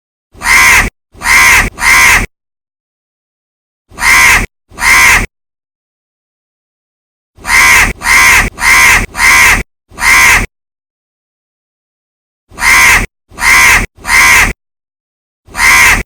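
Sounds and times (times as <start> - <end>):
crow cawing: 0.4 - 2.3, 4.0 - 5.3, 7.4 - 10.5, 12.5 - 14.6, 15.5 - 16.0.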